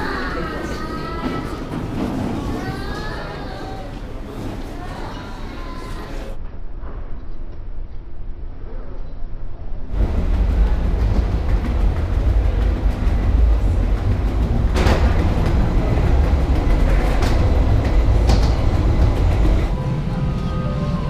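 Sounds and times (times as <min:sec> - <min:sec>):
rattling knocks: 0:10.0 - 0:19.7.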